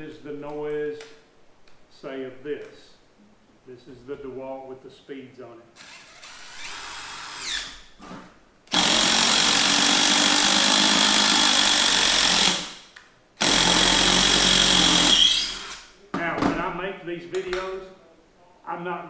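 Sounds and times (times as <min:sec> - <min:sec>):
impact driver impacting: 0:13.4 - 0:16.6.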